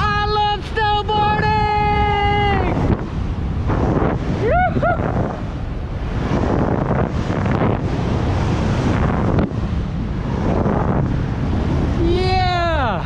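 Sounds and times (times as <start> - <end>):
wind rushing over microphone: 0.0 - 13.0
board running through snow: 3.6 - 11.9
person whooping: 4.4 - 5.4.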